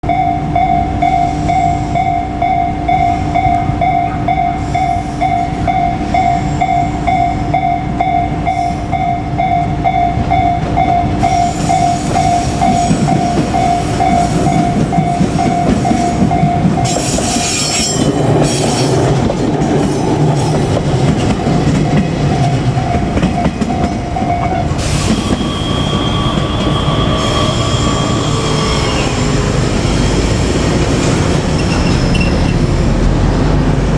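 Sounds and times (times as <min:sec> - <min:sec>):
level crossing warning bell: 0:00.0 - 0:24.7
electric trains running: 0:00.1 - 0:33.9.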